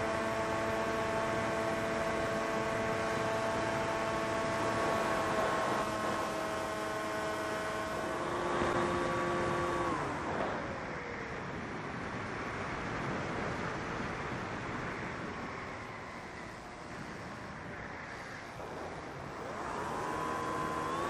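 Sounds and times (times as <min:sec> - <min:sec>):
quadcopter motors whining: 0:18.5 - 0:21.0.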